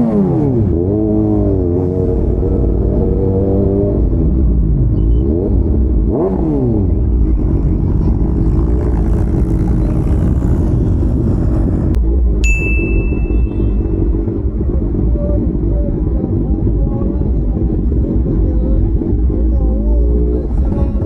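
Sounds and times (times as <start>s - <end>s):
motorcycle engines revving: 0.0s - 21.0s
high steady tone: 12.4s - 14.5s.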